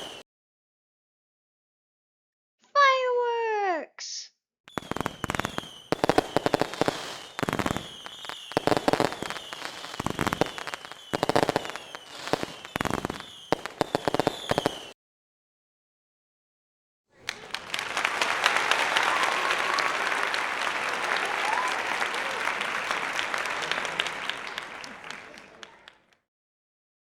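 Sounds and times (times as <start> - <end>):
fireworks crackling bangs: 0.0 - 0.2, 4.7 - 15.0, 17.3 - 26.0
fireworks falling whistles: 0.0 - 0.2, 4.7 - 15.0, 17.7 - 26.0
crowd applauding: 17.2 - 26.2.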